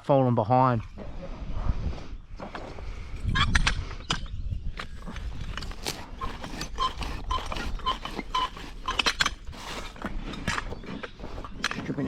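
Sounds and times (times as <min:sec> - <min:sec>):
hand tools knocking and scraping: 0:04.1 - 0:12.0.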